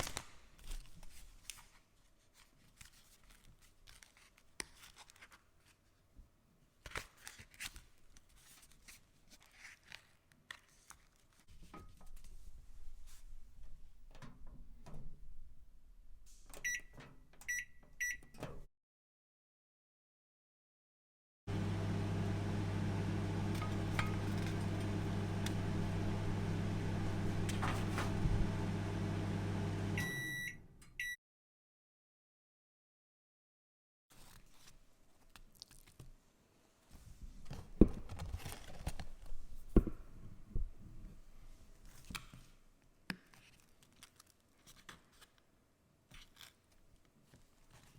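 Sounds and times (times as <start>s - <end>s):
microwave oven humming: 21.5s - 31.1s
short beeps: 30.0s - 31.2s.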